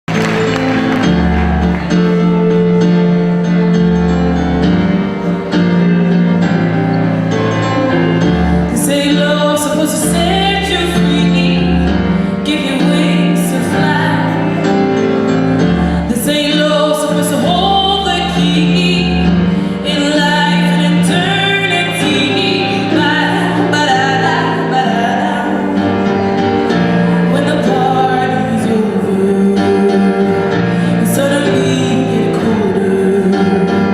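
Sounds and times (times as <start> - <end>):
held chords over pulsing bass: 0.1 - 33.9
person singing: 8.2 - 33.9.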